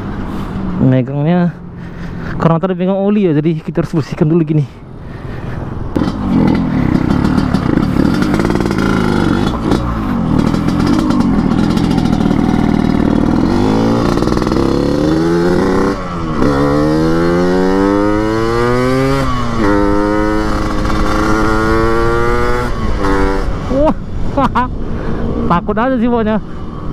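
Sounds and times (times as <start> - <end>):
motorcycle engine accelerating: 5.9 - 26.9.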